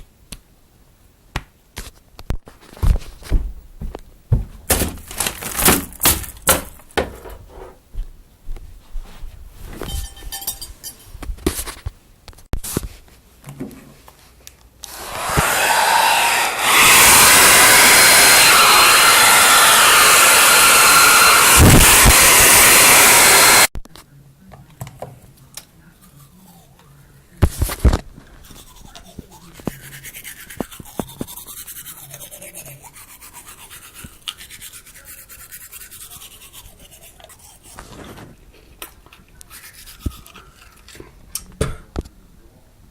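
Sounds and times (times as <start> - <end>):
motor rushing noise: 14.9 - 23.7.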